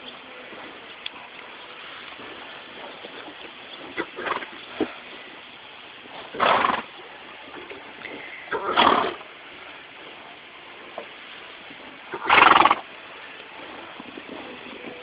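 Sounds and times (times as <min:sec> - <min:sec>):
horses sneezing: 0:03.9 - 0:05.1, 0:06.2 - 0:07.0, 0:08.1 - 0:09.3, 0:12.1 - 0:12.9.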